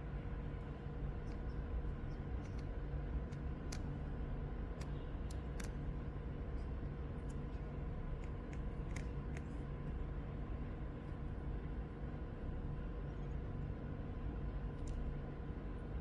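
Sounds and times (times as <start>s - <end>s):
steady low background hum: 0.0s - 16.0s
mechanical keyboard key clicks: 2.4s - 4.0s.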